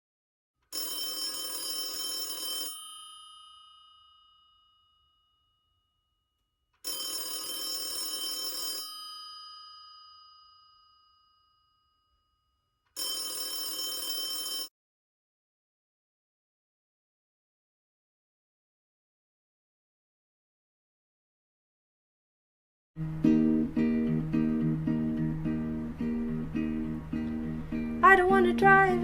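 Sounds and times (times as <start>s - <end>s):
telephone bell ringing: 0.7s - 5.3s, 6.8s - 12.0s, 13.0s - 14.7s.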